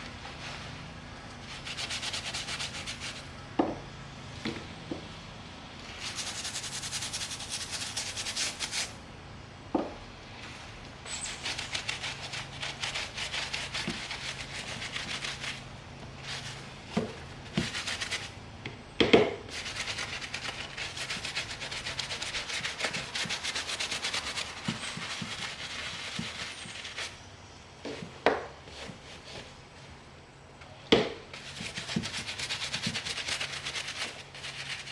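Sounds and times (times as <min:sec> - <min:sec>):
scrubbing on leather: 0:01.5 - 0:03.3, 0:05.9 - 0:09.0, 0:11.1 - 0:15.6, 0:17.6 - 0:18.4, 0:19.5 - 0:27.2, 0:31.4 - 0:34.9.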